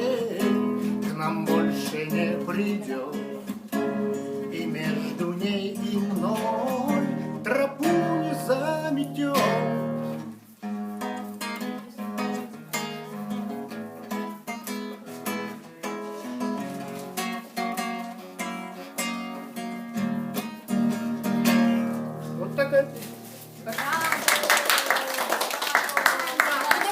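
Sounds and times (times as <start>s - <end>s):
man singing: 0.0s - 10.2s
acoustic guitar strumming chords: 0.0s - 23.6s.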